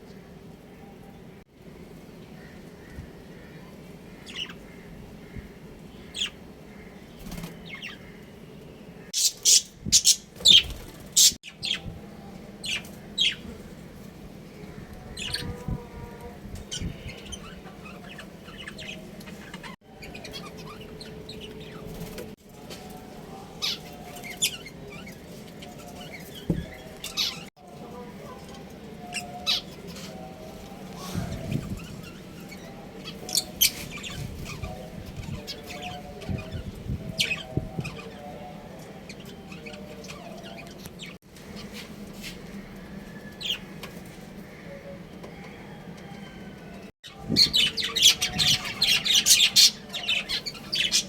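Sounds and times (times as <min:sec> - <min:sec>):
budgerigars chirping: 0:09.2 - 0:11.8.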